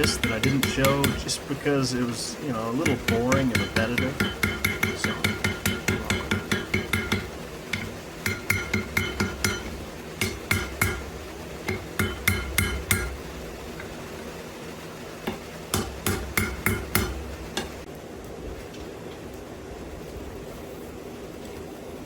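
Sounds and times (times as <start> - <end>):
hammer ringing on anvil: 0.0 - 1.3, 2.8 - 11.1, 11.7 - 13.2, 15.3 - 17.8.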